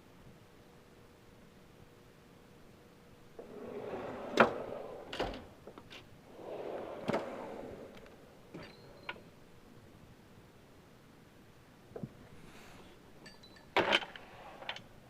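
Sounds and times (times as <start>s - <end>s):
drawer shutting clunk: 3.4s - 5.8s, 6.4s - 8.7s
metal drawers rolling on slides: 3.4s - 9.2s.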